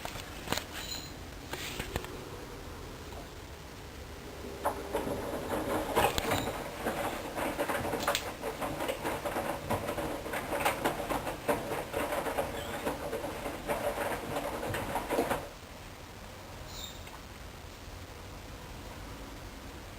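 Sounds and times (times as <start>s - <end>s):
washing machine drum tumbling: 3.1s - 15.6s.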